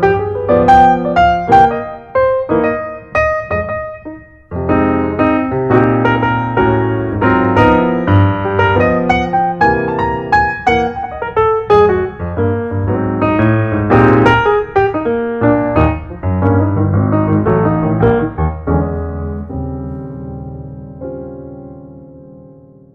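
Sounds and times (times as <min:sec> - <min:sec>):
piano music: 0:00.0 - 0:22.9.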